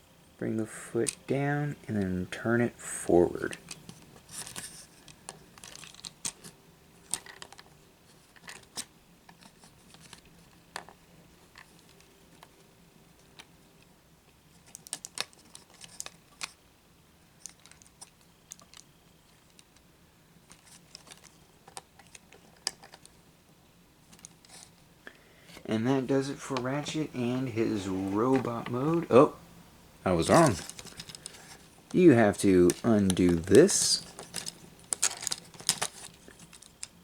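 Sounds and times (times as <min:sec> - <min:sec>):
plastic toy parts clicking: 0:03.5 - 0:07.7, 0:20.5 - 0:23.2, 0:30.4 - 0:31.6, 0:32.7 - 0:37.0.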